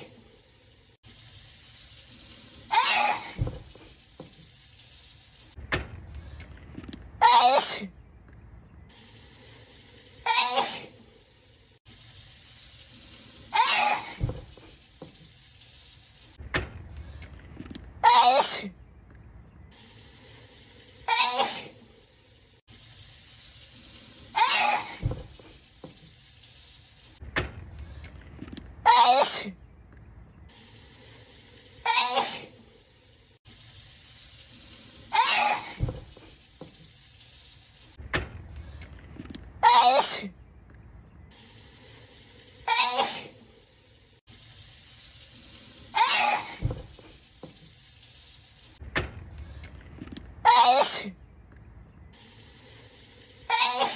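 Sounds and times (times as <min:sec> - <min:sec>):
person sneezing: 0:10.3 - 0:11.0, 0:21.1 - 0:21.8, 0:31.9 - 0:32.5, 0:42.7 - 0:43.4, 0:50.5 - 0:51.2.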